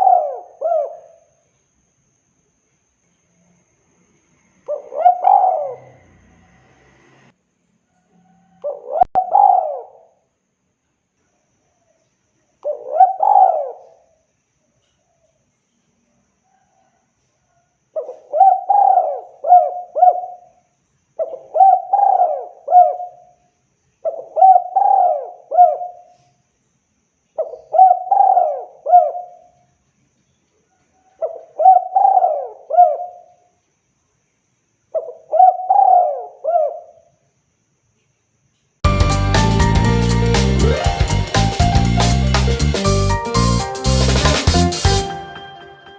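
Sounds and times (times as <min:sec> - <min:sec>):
dove cooing: 0:00.0 - 0:01.1, 0:04.7 - 0:06.0, 0:08.7 - 0:10.0, 0:12.7 - 0:13.9, 0:18.0 - 0:20.3, 0:21.2 - 0:23.0, 0:27.7 - 0:29.3, 0:31.3 - 0:33.2, 0:35.0 - 0:36.9.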